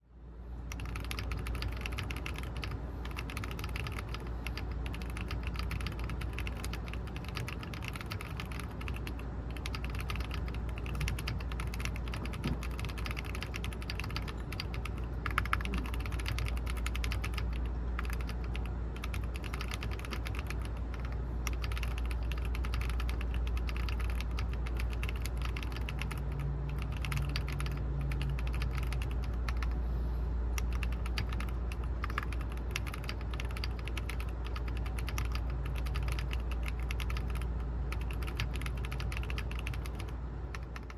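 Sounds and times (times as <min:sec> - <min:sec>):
steady low hum: 0:00.0 - 0:40.9
mechanical keyboard typing: 0:00.7 - 0:29.8, 0:30.5 - 0:40.9.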